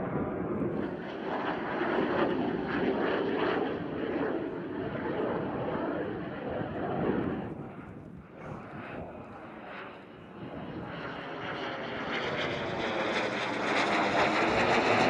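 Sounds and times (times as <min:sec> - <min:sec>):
jet aircraft flying past: 0:00.0 - 0:15.0.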